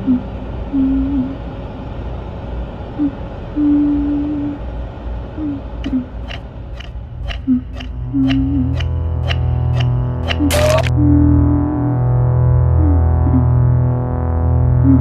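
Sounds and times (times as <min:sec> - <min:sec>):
low rumble: 0:00.0 - 0:15.0
sharp clicks: 0:05.8 - 0:10.9
short low tones: 0:07.4 - 0:15.0.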